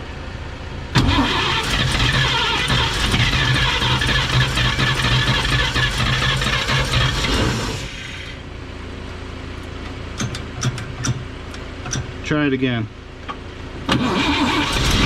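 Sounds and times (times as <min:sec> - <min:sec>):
engine cranking by starter: 0:01.0 - 0:08.4, 0:13.8 - 0:15.0.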